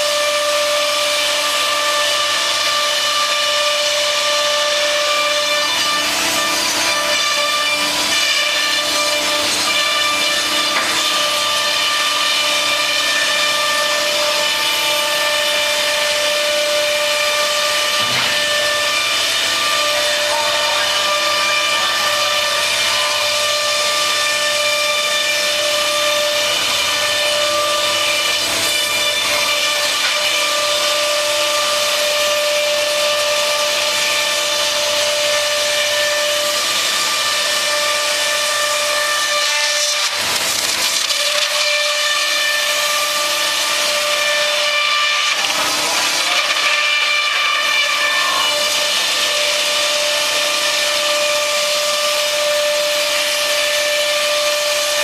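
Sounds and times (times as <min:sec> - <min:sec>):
router spindle whining: 0:00.0 - 0:55.0.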